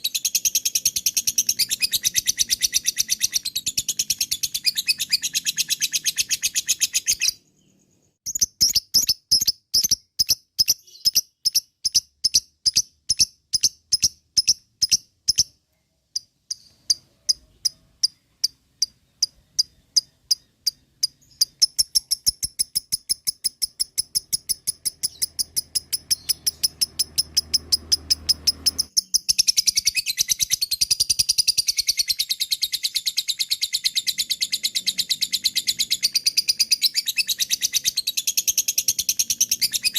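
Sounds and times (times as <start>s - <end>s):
lovebird chattering: 0.0s - 7.4s, 8.3s - 15.6s, 16.2s - 39.9s.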